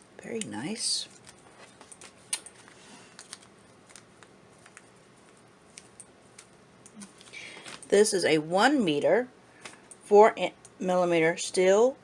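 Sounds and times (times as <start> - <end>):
plastic bags rustling: 0.6 - 6.5.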